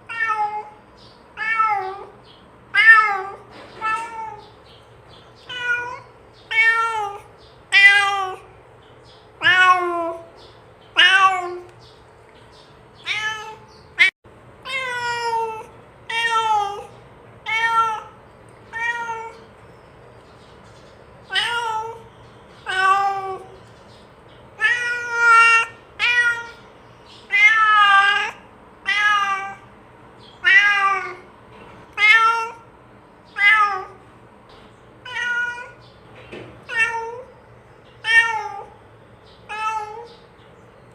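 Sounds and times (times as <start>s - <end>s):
cat meowing: 0.0s - 0.8s, 1.4s - 4.6s, 5.4s - 8.5s, 9.4s - 10.3s, 10.9s - 11.7s, 13.0s - 19.5s, 21.3s - 23.6s, 24.6s - 26.7s, 27.3s - 29.7s, 30.4s - 31.3s, 31.9s - 32.7s, 33.3s - 34.0s, 35.0s - 35.8s, 36.6s - 37.3s, 38.0s - 38.8s, 39.5s - 40.2s.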